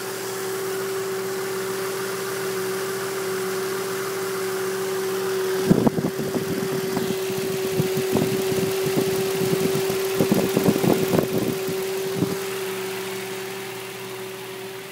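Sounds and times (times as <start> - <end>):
vehicle steady buzz: 0.0 - 14.9
irregular rattling: 6.9 - 12.6.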